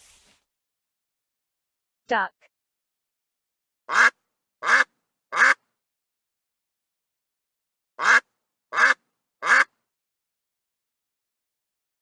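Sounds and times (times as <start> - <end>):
duck quacking: 3.9 - 5.6, 8.0 - 9.7.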